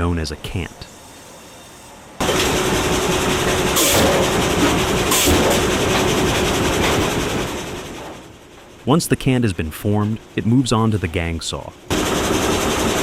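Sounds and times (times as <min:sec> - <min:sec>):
bandsaw cutting a log: 0:02.2 - 0:06.8.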